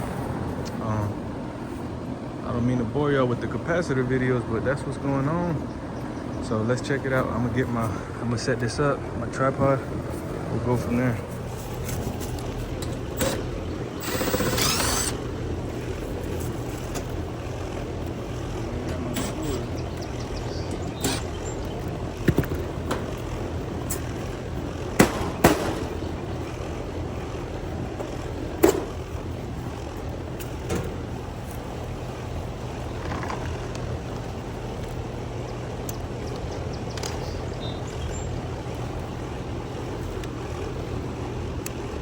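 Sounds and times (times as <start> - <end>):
fan motor hum: 0.0 - 42.0
equipment clicks and knocks: 11.7 - 26.7, 28.0 - 31.6.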